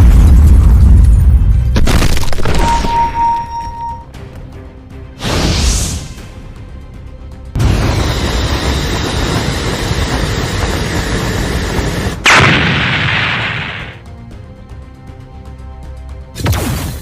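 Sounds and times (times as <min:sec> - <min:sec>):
cartoon cannon fire and explosions: 0:00.0 - 0:03.4, 0:07.6 - 0:14.0, 0:16.4 - 0:17.0
background music: 0:00.0 - 0:17.0.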